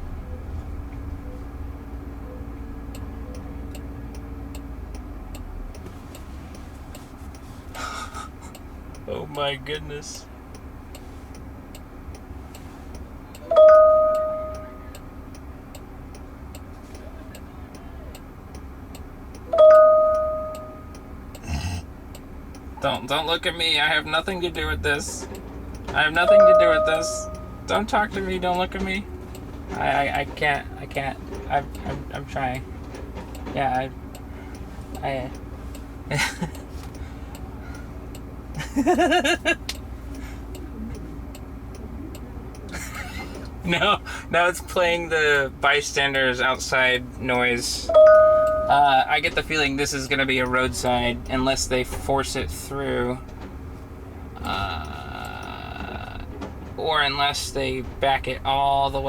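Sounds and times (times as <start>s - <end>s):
faint steady ticking: 0.0s - 59.0s
low engine hum: 0.0s - 59.0s
car indicator clicking: 0.7s - 59.0s
electronic two-tone chime: 13.5s - 14.8s, 19.5s - 20.9s, 26.3s - 27.7s, 47.9s - 48.9s.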